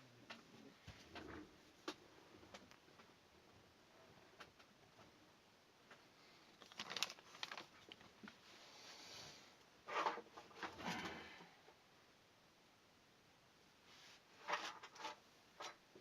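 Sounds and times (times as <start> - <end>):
small objects rustling and clattering: 5.9 - 8.5, 14.4 - 15.8.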